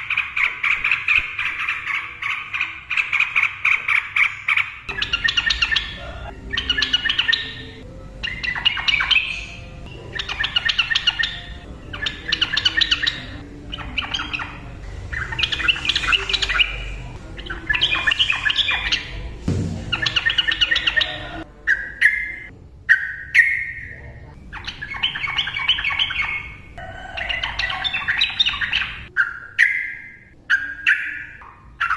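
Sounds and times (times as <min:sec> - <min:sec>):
bird chattering song: 0:00.0 - 0:31.9.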